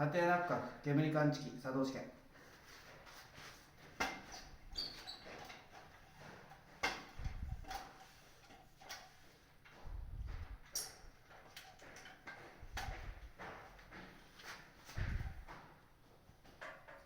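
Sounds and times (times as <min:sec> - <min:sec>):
short high squeak: 0:04.8 - 0:05.2.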